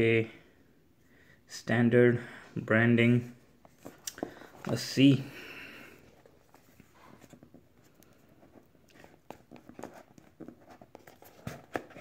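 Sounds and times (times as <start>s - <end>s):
cardboard box rustling and scraping: 8.4s - 12.0s.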